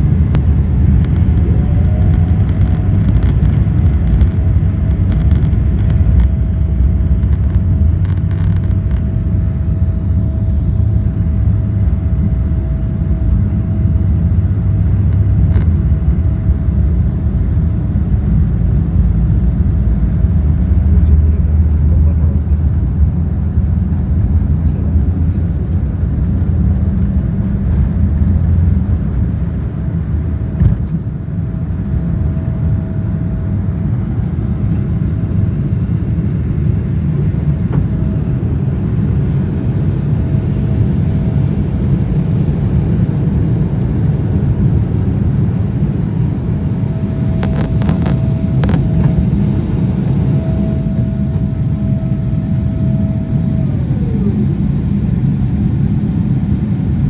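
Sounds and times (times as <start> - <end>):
thin steady whine: 0.0 - 16.9, 43.8 - 57.0
vehicle engine rumble: 0.0 - 57.0.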